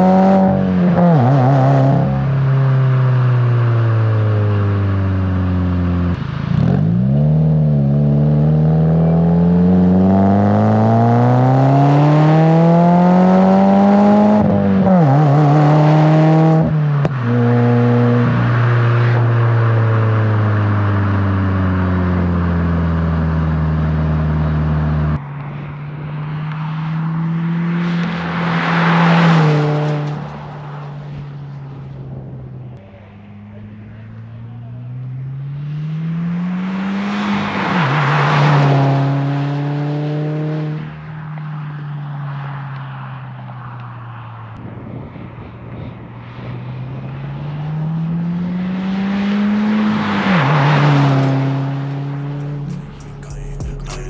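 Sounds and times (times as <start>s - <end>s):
car engine accelerating: 0.0s - 25.2s, 47.8s - 54.0s.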